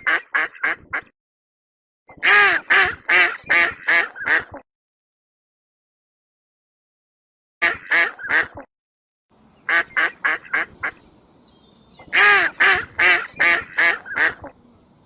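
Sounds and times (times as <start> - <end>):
waterfowl calling: 9.5 - 15.0.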